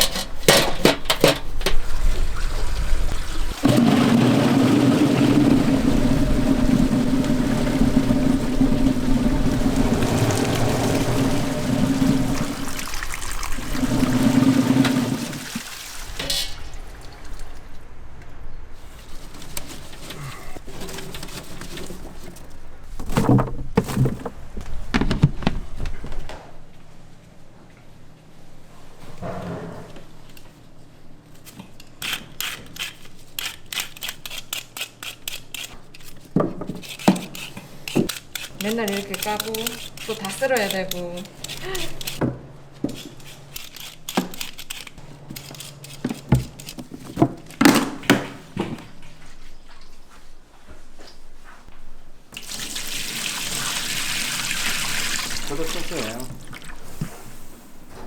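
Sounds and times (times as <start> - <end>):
handling sounds: 0.0 - 2.2, 31.3 - 50.5
water running and splashing: 1.8 - 17.8, 52.4 - 57.1
knife scraping roots: 31.4 - 42.2, 42.9 - 47.1.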